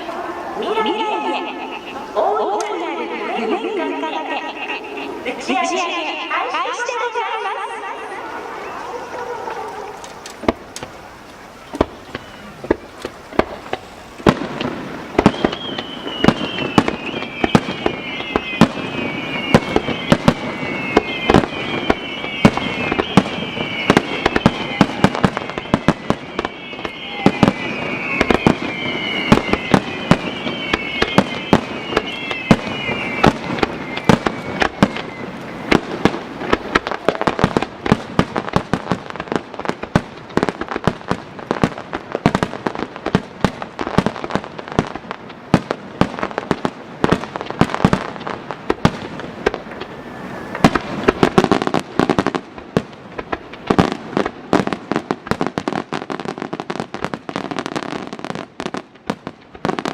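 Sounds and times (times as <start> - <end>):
firework bangs and crackles: 0.0 - 6.8, 8.2 - 59.9
falling firework whistles: 8.0 - 40.8, 45.5 - 59.9.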